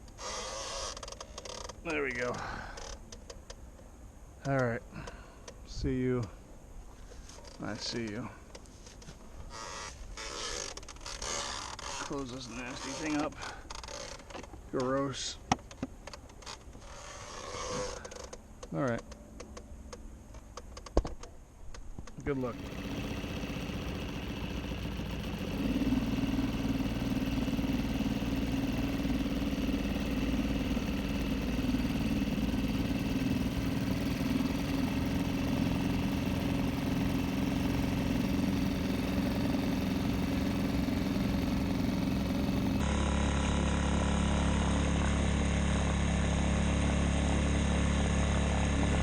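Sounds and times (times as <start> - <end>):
outboard motor running: 22.3 - 49.0.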